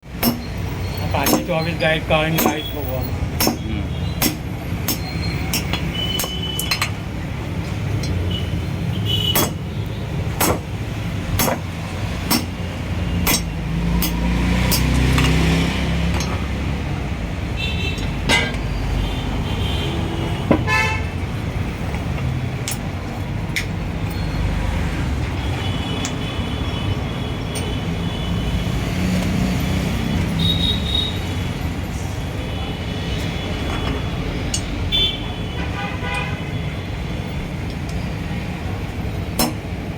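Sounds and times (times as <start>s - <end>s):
traffic rumble: 0.0s - 39.9s
steel hammer blows on metal: 0.2s - 1.7s, 3.4s - 7.0s, 9.3s - 9.7s, 11.4s - 12.6s, 13.2s - 15.0s
vehicle horns tooting: 8.2s - 10.0s, 18.9s - 21.2s, 30.1s - 31.4s, 34.9s - 37.1s.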